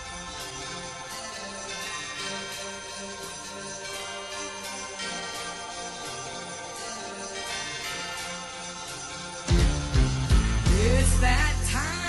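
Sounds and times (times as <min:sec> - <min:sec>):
jingle bells shaking: 0:00.0 - 0:12.0
upbeat instrumental christmas music: 0:00.0 - 0:12.0.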